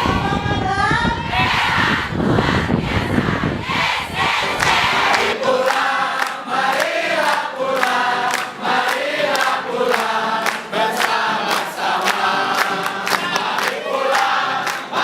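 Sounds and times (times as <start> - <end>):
group singing in unison: 1.3 - 15.0.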